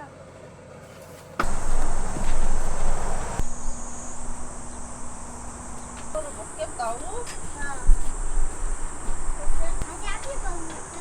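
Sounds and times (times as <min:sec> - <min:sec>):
loud rushing noise: 0:01.4 - 0:09.8
insects trilling: 0:01.4 - 0:11.0.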